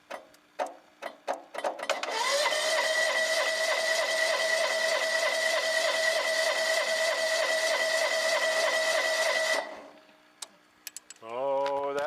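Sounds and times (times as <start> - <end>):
electric starter cranking engine: 1.9 - 10.0.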